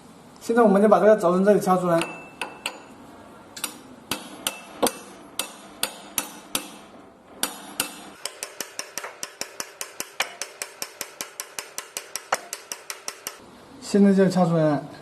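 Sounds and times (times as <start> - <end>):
hammer striking metal: 2.0 - 3.0, 3.6 - 13.4.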